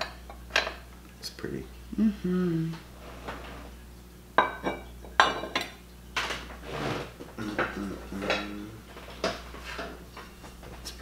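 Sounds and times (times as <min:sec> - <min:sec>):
ceramic and glass clinking: 0:04.4 - 0:05.8.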